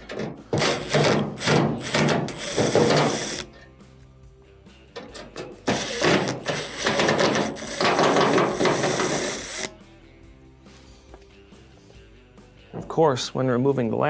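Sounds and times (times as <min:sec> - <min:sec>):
power screwdriver whirring: 0:00.5 - 0:03.5, 0:05.7 - 0:09.7
screwdriver clicks: 0:00.6 - 0:03.4, 0:05.7 - 0:09.7.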